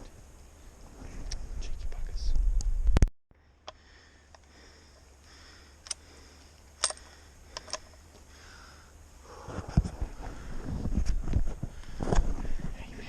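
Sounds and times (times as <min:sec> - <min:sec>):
faint steady hiss: 0:00.0 - 0:13.0
wind rumble on microphone: 0:00.8 - 0:03.1, 0:09.4 - 0:13.0.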